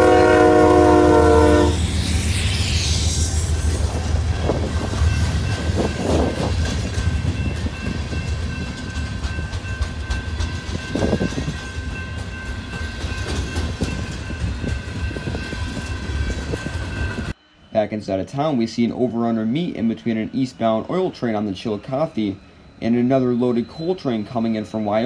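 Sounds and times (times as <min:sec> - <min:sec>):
diesel train low rumble: 0:00.0 - 0:25.0
clatter of train cars: 0:03.7 - 0:17.3
thin steady high tone: 0:16.9 - 0:25.0.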